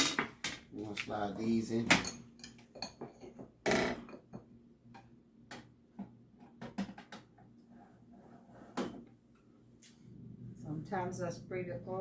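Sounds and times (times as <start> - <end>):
kitchenware clattering: 0.0 - 0.7, 1.5 - 4.5
kitchenware clicks and taps: 1.8 - 7.4.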